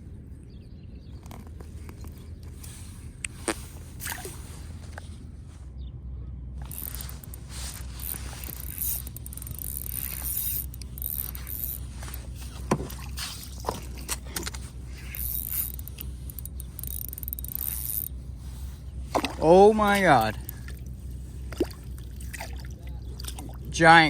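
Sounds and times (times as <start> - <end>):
steady low hum: 0.0 - 24.0
brief squeaks: 6.6 - 18.2
fishing reel clicking and rattling: 6.6 - 18.6, 19.2 - 20.8.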